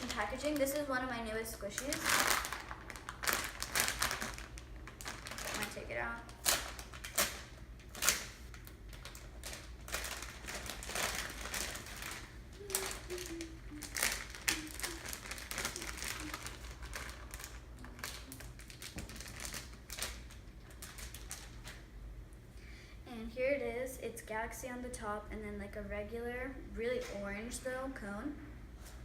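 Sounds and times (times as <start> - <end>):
plastic packaging crinkling: 0.0 - 0.9, 1.5 - 21.9.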